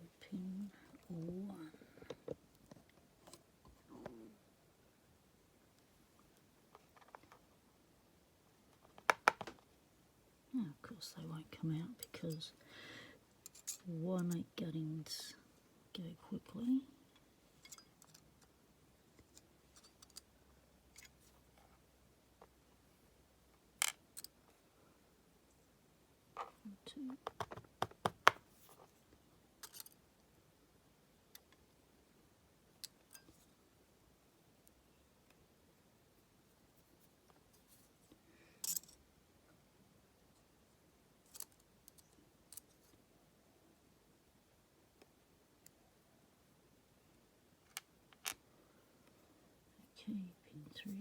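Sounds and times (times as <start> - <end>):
small clicks of lock parts: 13.4 - 13.8, 17.6 - 18.5, 19.2 - 20.3, 20.9 - 21.3, 29.6 - 30.0, 32.8 - 33.4, 38.6 - 39.0, 41.2 - 42.9, 47.6 - 48.4.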